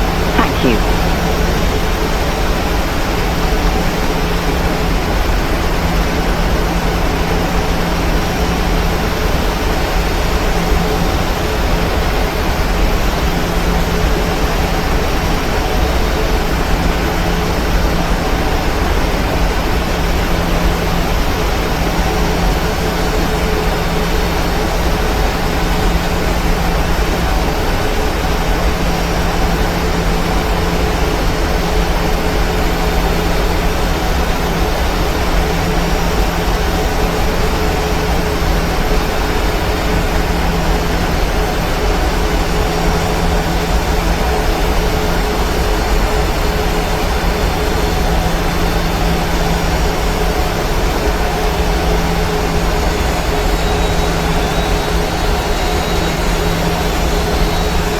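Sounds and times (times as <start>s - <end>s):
faint high tone: 0.4s - 1.6s.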